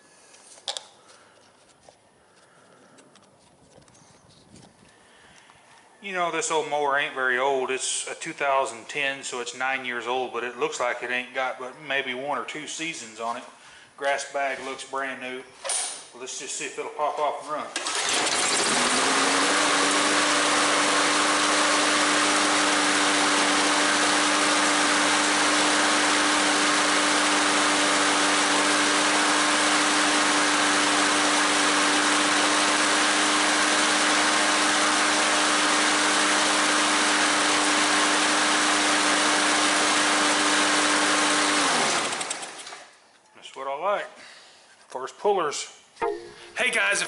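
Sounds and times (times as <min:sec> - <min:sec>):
lawn mower engine running: 0:17.7 - 0:42.8.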